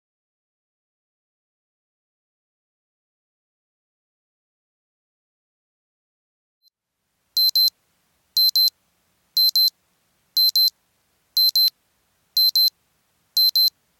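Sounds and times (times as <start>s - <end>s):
alarm clock double beeps: 7.4s - 7.7s, 8.4s - 8.7s, 9.4s - 9.7s, 10.4s - 10.7s, 11.4s - 11.7s, 12.4s - 12.7s, 13.4s - 13.7s.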